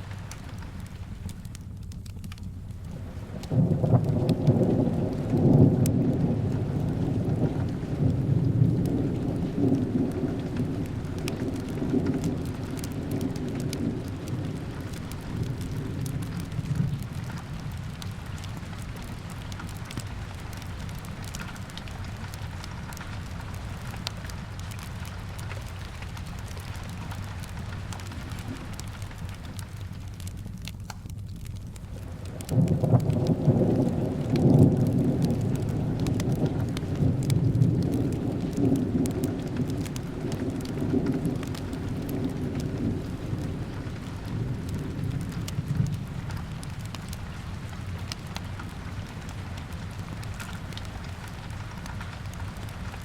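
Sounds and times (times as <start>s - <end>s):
fireplace crackling: 0.0s - 5.3s, 8.8s - 34.3s, 34.9s - 53.0s
steady rain: 0.0s - 53.0s
thunder rolling: 2.9s - 25.8s, 31.8s - 50.8s.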